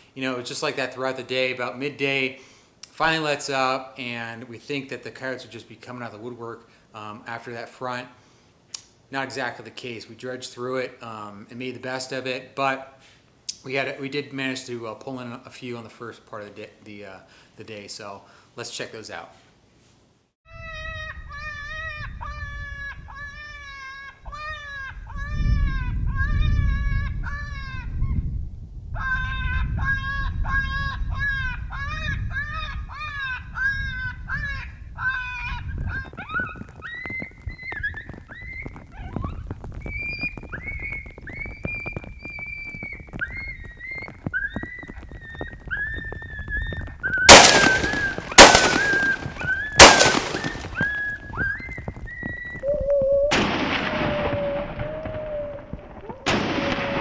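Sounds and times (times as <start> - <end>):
shotgun blasts: 47.3 - 51.2.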